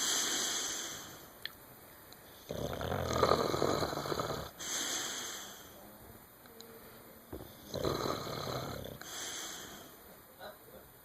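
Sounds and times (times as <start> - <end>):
soft hissing breaths: 0.0 - 10.8
loud rasping snore: 2.5 - 4.5, 7.7 - 9.0.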